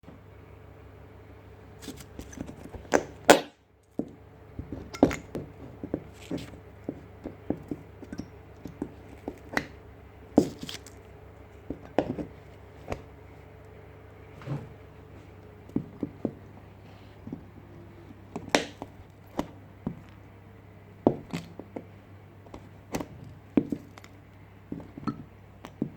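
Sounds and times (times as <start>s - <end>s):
steady low hum: 0.0s - 25.9s
knocks and thunks of chair parts: 14.4s - 14.8s.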